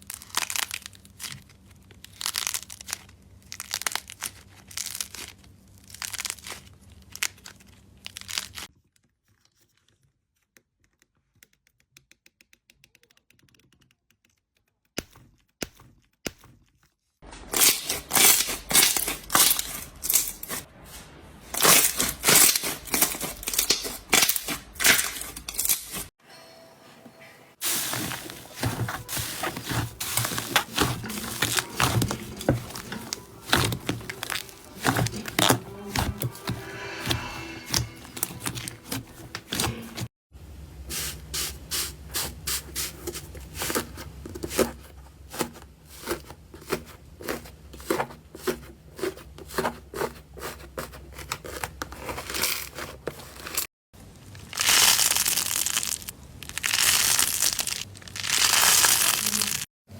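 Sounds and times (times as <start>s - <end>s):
sticky slime crackles and pops: 0.0s - 8.6s, 54.2s - 59.6s.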